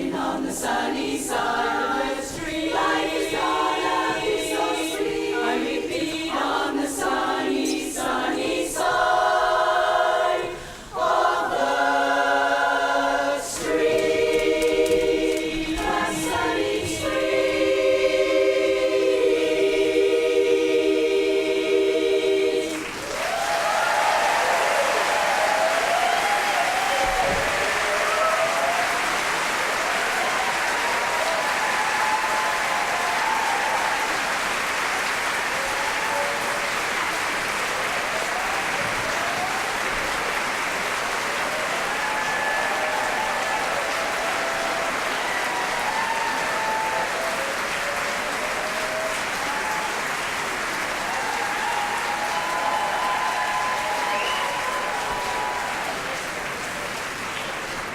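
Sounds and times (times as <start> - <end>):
audience applauding: 11.0 - 17.7, 22.5 - 57.9
people cheering: 22.6 - 57.9.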